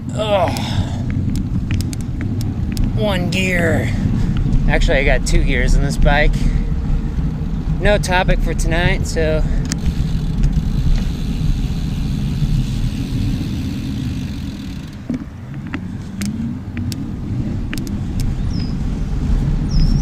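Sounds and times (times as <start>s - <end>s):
bicycle clicks and rattles: 0.0s - 18.8s
wind and road rumble: 0.0s - 20.0s.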